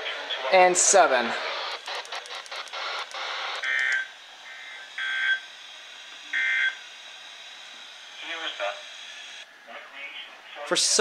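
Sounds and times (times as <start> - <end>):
radio static hiss: 0.0 - 5.5, 8.2 - 11.0
warbling data bursts: 1.7 - 5.6.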